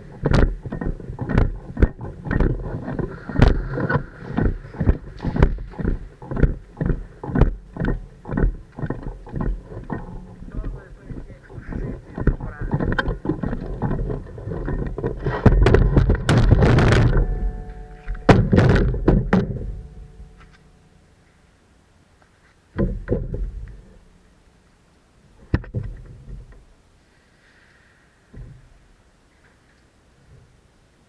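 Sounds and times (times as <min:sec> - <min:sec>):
thumps and knocks: 0:00.0 - 0:20.8, 0:22.8 - 0:24.0, 0:25.4 - 0:26.7
rustling: 0:00.0 - 0:21.5.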